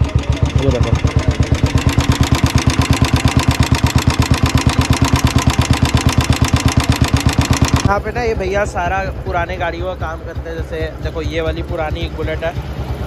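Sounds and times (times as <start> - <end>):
motorcycle engine idling: 0.0 - 13.0.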